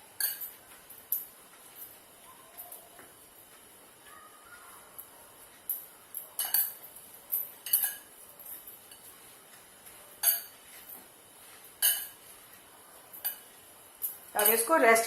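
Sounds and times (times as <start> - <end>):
dishes and utensils clinking: 0.0 - 1.3, 5.7 - 9.2, 10.1 - 12.4, 13.1 - 14.8.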